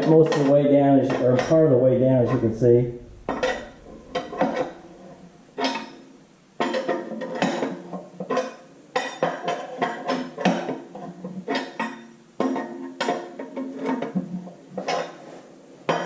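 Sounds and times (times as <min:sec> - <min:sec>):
metal tools clanking: 0:00.0 - 0:07.8.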